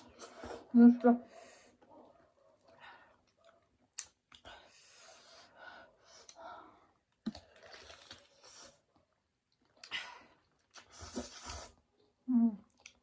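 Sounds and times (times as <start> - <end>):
person chewing noodles: 7.0 - 8.9, 9.5 - 12.1.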